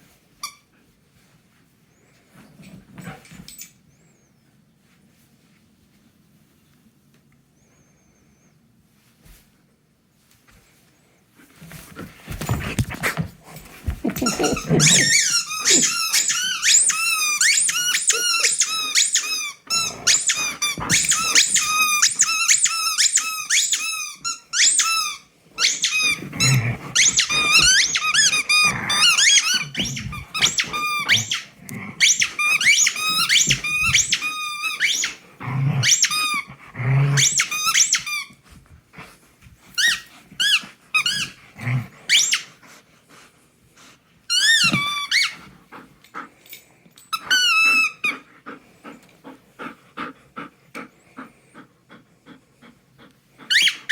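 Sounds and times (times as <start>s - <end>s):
dog squeaky toy squeaking: 14.2s - 35.2s, 37.2s - 38.3s, 47.1s - 48.1s, 53.5s - 53.9s.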